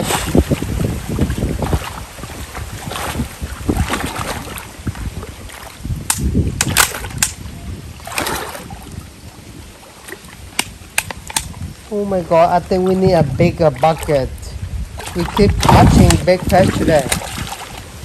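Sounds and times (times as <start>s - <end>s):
water splashing and sloshing: 0.0s - 18.0s
sharp clicks: 10.6s - 11.6s.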